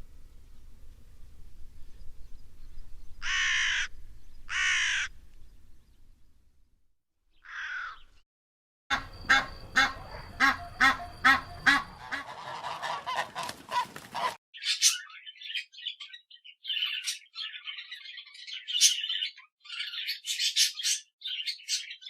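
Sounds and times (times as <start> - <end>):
bird high chattering squawks: 7.4 - 8.1, 8.9 - 16.1
goose honking: 8.9 - 14.4.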